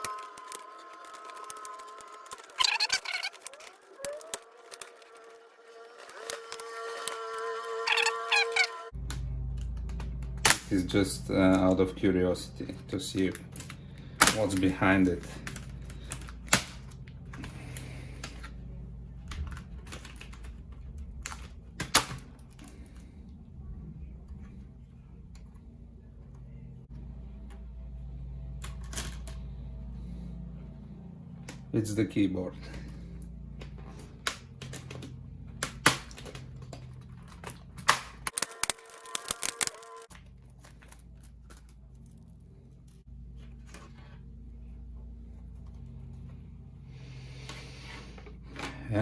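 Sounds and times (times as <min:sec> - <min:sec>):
plastic laptop parts clicking: 0:00.0 - 0:07.2, 0:33.6 - 0:42.2.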